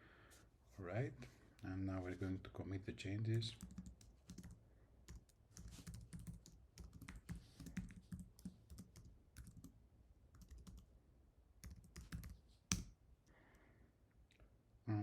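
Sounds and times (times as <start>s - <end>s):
typing on computer keyboard: 3.5s - 9.7s, 10.3s - 10.9s, 11.6s - 12.9s.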